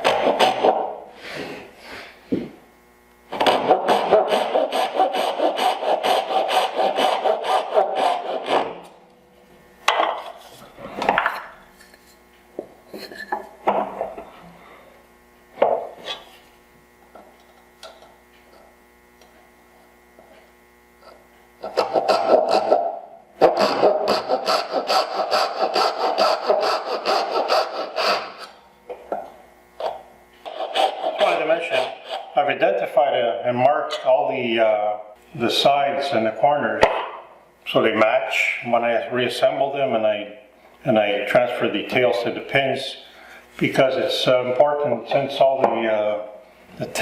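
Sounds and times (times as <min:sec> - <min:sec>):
hand saw cutting wood: 0:00.0 - 0:01.4, 0:03.3 - 0:09.0, 0:21.6 - 0:28.6, 0:29.8 - 0:32.5.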